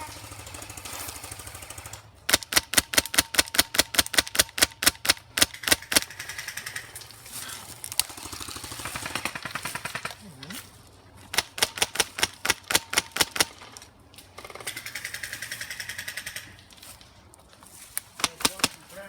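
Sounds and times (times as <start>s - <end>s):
airsoft gun rapid fire: 0.0s - 7.0s, 8.0s - 10.2s, 11.3s - 13.6s, 14.4s - 16.6s, 18.2s - 18.9s
faint airsoft shots: 18.2s - 19.0s.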